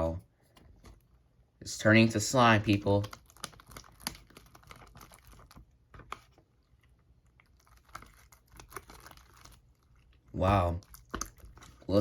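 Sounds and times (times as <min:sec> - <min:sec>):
sticky slime clicks and crackles: 0:02.7 - 0:06.3, 0:10.8 - 0:11.8.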